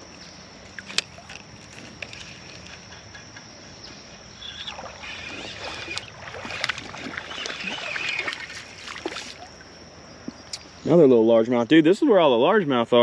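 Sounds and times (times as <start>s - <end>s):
water splashing in a creek: 4.4s - 9.8s.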